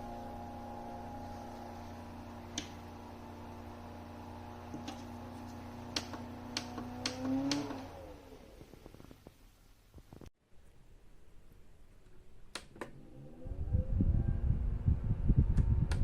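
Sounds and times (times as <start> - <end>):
small fan motor humming: 0.0 - 9.2.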